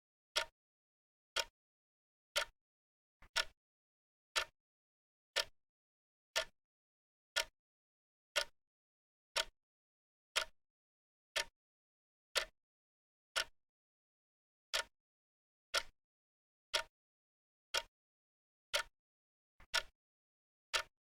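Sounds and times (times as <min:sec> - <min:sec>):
clock ticking: 0:19.7 - 0:19.9.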